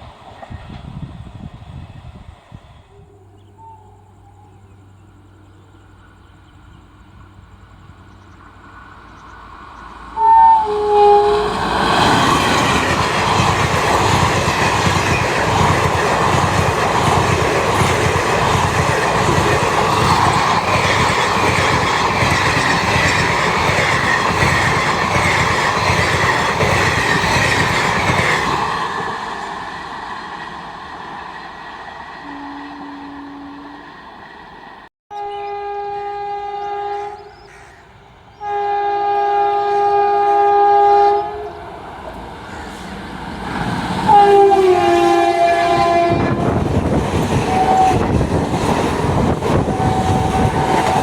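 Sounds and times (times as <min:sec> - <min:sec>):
train horn blasts: 0:10.1 - 0:12.5, 0:32.2 - 0:34.0, 0:35.1 - 0:37.5, 0:38.3 - 0:41.7, 0:44.1 - 0:46.7, 0:47.4 - 0:48.2, 0:49.5 - 0:51.0
train wheels clattering over rails: 0:11.5 - 0:32.2, 0:45.2 - 0:51.0.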